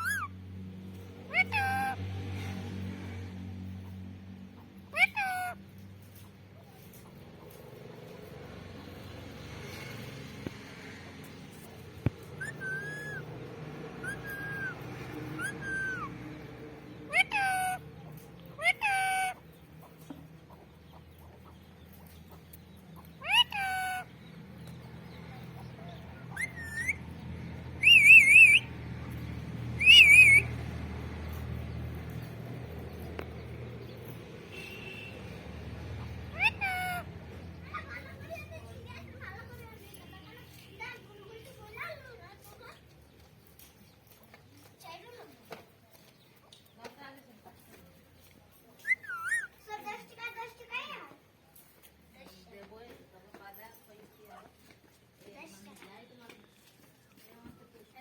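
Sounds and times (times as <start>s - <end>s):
parrot whistling: 0.0s - 0.3s, 1.3s - 2.0s, 12.3s - 13.3s, 14.0s - 14.8s, 15.4s - 16.1s, 17.1s - 17.8s, 18.6s - 19.4s, 23.2s - 24.1s, 26.3s - 27.0s, 27.8s - 28.7s, 29.8s - 30.5s, 36.3s - 37.0s, 48.8s - 49.5s.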